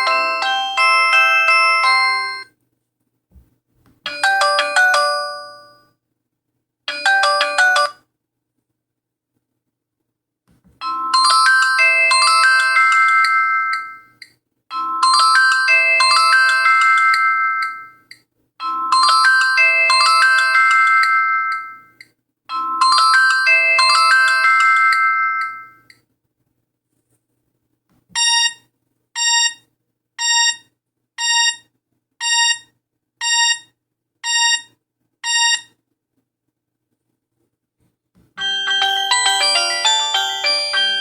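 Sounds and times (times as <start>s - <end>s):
synthesized ringtone melody: 0.0s - 2.5s, 4.1s - 5.7s, 6.9s - 8.0s, 38.4s - 41.0s.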